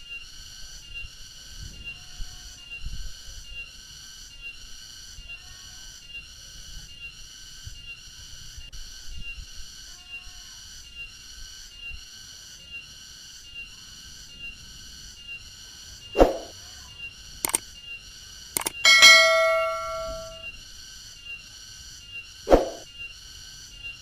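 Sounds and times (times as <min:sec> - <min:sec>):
sharp loud sound: 0:18.6 - 0:20.4.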